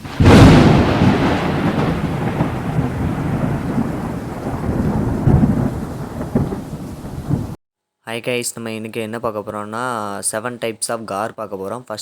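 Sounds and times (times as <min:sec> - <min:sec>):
steady rain: 0:00.0 - 0:07.6
thunder clap and rumble: 0:00.0 - 0:07.6.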